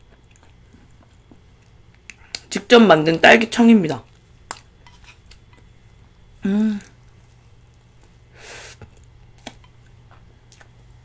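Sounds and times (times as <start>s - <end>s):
person humming: 6.4s - 7.0s
breathy exhale or sniff: 8.3s - 8.8s.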